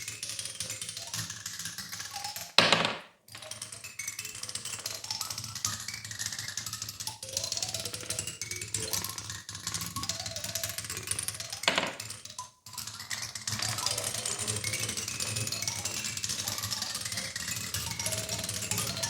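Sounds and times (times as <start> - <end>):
steel balls clattering and rolling: 2.6 - 3.5, 11.5 - 12.2, 12.9 - 19.0.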